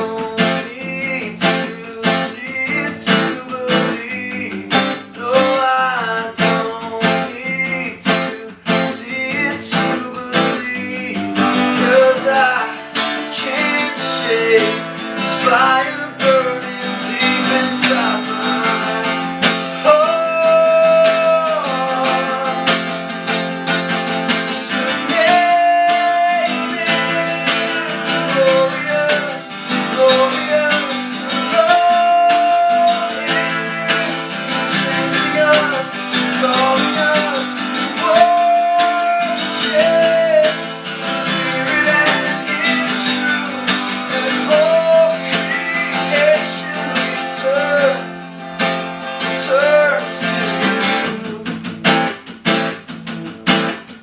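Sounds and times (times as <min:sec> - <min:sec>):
acoustic guitar strumming: 0:00.0 - 0:54.0.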